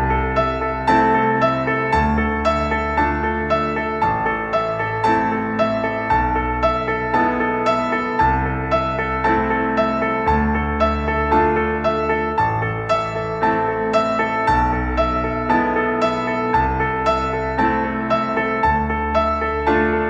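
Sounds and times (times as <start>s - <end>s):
instrumental music with bass line: 0.0s - 20.0s.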